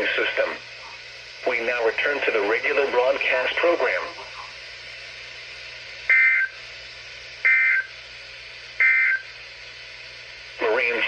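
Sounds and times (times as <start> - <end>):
faint receiver hiss: 0.0 - 11.0
warbling two-tone data bursts: 6.1 - 6.6, 7.4 - 7.9, 8.8 - 9.3.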